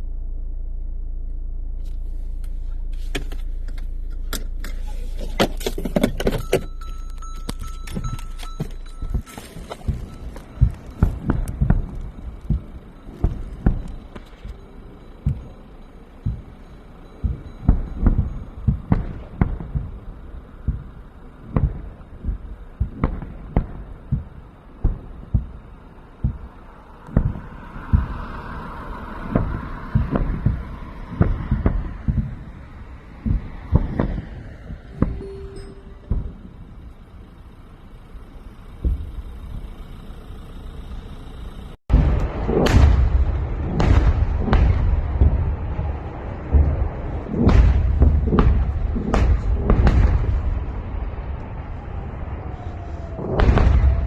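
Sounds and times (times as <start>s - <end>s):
dull low thumps: 7.9s - 37.5s, 38.2s - 39.8s, 41.9s - 52.5s.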